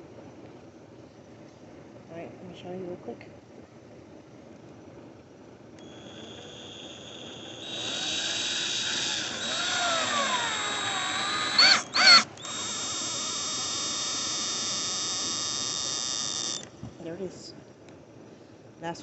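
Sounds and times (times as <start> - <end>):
electric drill driving a screw: 5.8 - 16.7.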